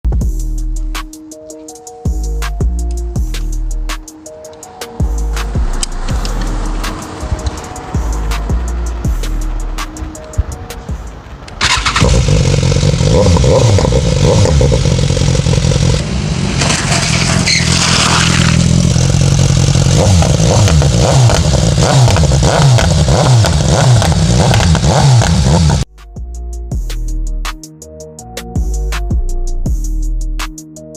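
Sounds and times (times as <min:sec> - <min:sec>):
motorcycle engine revving: 0:11.6 - 0:25.9.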